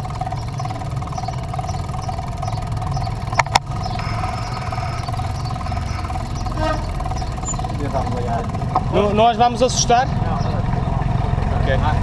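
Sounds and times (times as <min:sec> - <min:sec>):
vehicle engine rumbling: 0:00.0 - 0:12.0
sharp clicks: 0:03.0 - 0:06.2.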